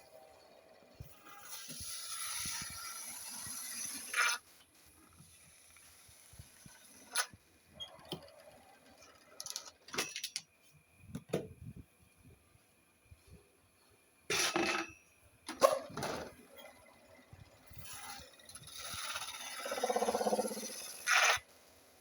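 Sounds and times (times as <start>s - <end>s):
tools scraping and knocking: 14.3s - 16.3s.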